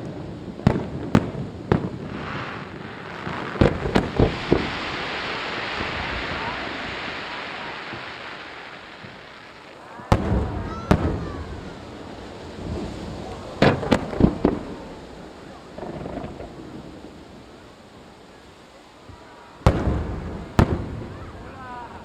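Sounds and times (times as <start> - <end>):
firework shells bursting: 0.7 - 12.0
rolling rumble: 0.9 - 18.2.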